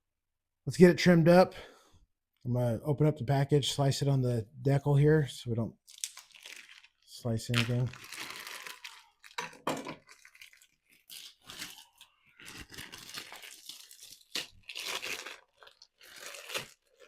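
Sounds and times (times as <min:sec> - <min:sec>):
plastic crinkling and tearing: 0:05.9 - 0:17.0
knife slitting plastic packaging: 0:07.5 - 0:17.0.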